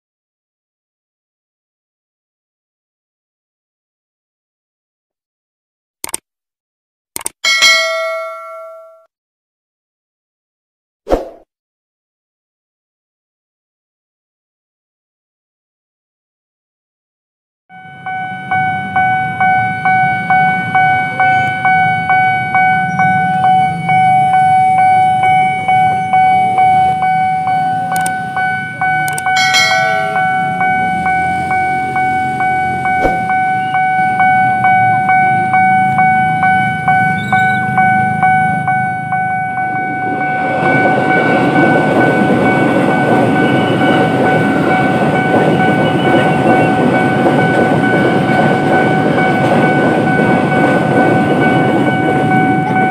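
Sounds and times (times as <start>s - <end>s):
level crossing bell ringing: 7.4s - 9.1s, 17.7s - 52.9s
electric train passing: 17.8s - 52.9s
wheels rumbling on rails: 17.8s - 52.9s.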